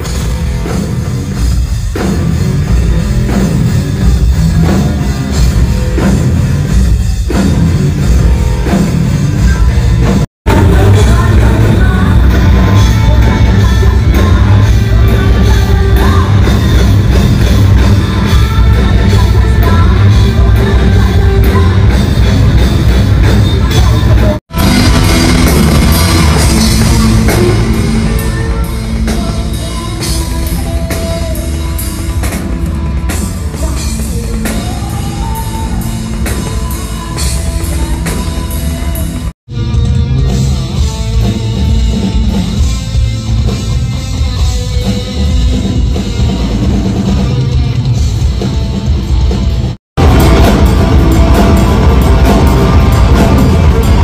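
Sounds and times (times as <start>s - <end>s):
heavy metal band playing live: 0.0s - 54.0s
person singing: 8.3s - 39.3s, 50.0s - 54.0s.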